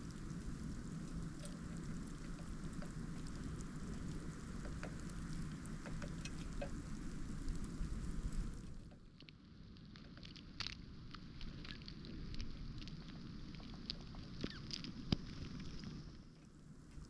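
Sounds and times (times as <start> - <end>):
wind rumble: 0.0 - 9.0
faint light ticks: 0.0 - 17.0.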